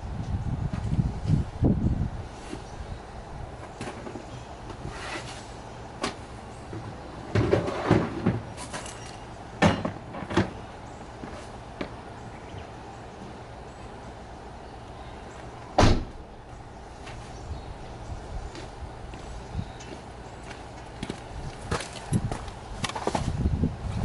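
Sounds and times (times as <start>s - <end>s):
door knocks and clunks: 15.8s - 16.2s
door slamming: 15.8s - 16.2s.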